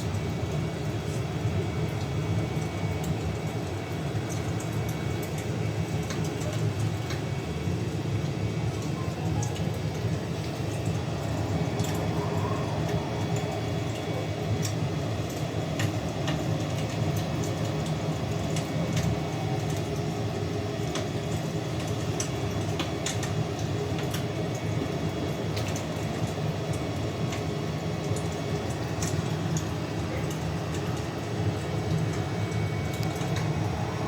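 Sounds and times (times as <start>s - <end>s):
fire crackling and popping: 8.2s - 34.0s.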